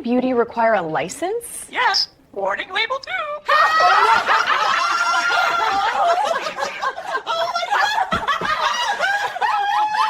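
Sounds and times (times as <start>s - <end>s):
people laughing hard: 3.4s - 10.0s.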